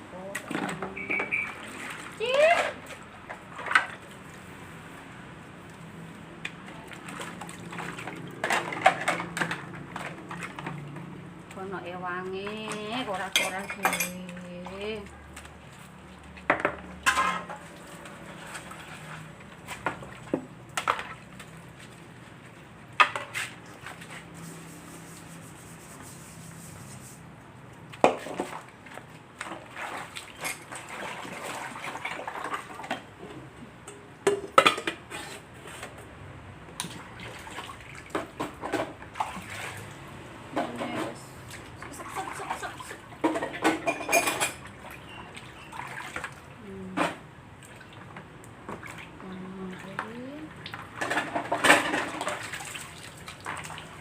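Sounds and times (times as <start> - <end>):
water splashing: 0.1 - 11.5, 27.8 - 33.2, 36.8 - 54.0
utensils clinking against dishes: 12.6 - 14.4, 43.3 - 44.7.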